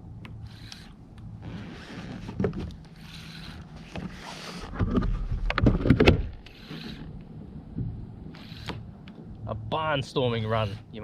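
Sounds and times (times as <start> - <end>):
knocks and clicks on a hull: 3.9 - 6.4.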